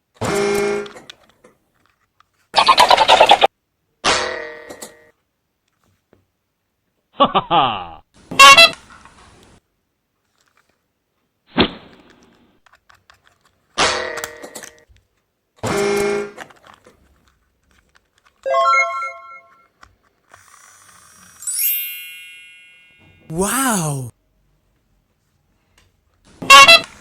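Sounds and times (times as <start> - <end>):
bell-like chime tones: 21.5 - 23.2.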